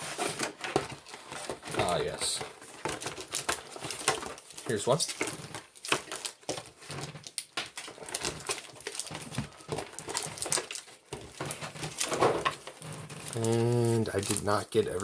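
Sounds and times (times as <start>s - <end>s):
foil packs crinkling: 0.0s - 15.0s.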